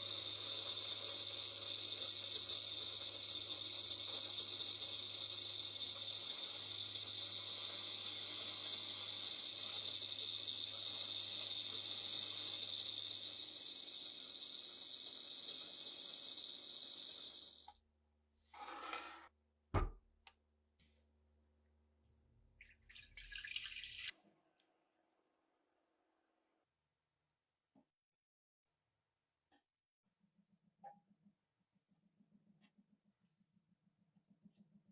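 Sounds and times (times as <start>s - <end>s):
water running from a tap: 0.0s - 17.8s, 22.6s - 24.1s.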